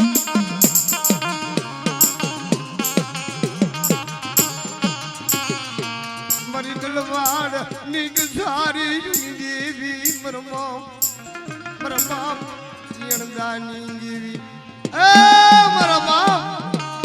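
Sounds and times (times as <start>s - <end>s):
bright metallic stroke: 0.0s - 1.3s, 2.0s - 3.1s, 3.8s - 5.6s, 6.3s - 6.7s, 8.2s - 8.6s, 9.2s - 9.4s, 10.1s - 10.4s, 11.0s - 11.4s, 12.0s - 12.3s, 13.1s - 13.3s
drum beat: 0.0s - 1.4s, 2.0s - 3.2s, 3.8s - 5.6s, 6.3s - 6.6s, 8.2s - 8.4s, 9.2s - 9.4s, 10.1s - 10.3s, 11.0s - 11.4s, 12.0s - 12.2s.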